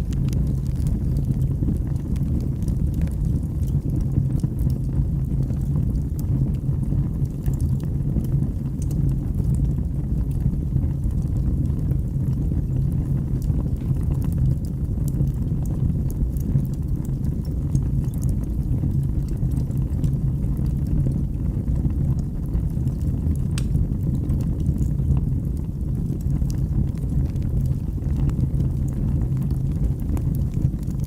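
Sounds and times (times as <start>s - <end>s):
fire pop: 0.0s - 4.7s, 21.3s - 25.3s
wood fire rumbling and crackling: 0.0s - 31.0s.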